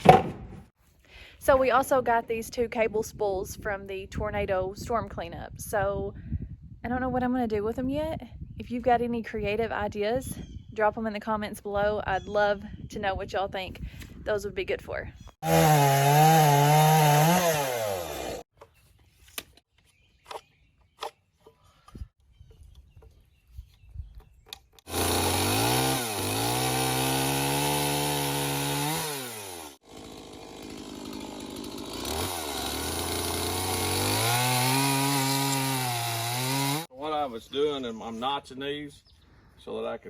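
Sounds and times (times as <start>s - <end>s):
chainsaw cutting wood: 0.0s - 0.5s, 15.4s - 18.5s, 24.8s - 36.9s.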